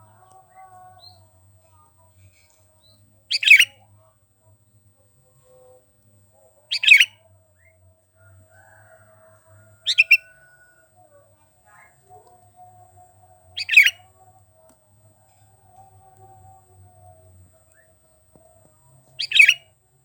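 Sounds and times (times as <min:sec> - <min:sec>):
bird calling: 0:03.3 - 0:03.8, 0:06.7 - 0:07.2, 0:09.8 - 0:10.4, 0:13.6 - 0:14.1, 0:19.2 - 0:19.6.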